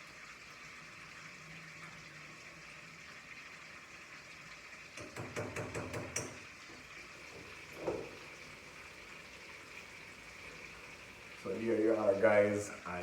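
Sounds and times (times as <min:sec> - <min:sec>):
food cooking hiss: 0:00.0 - 0:13.0
utensil knocking against pot: 0:05.0 - 0:06.4.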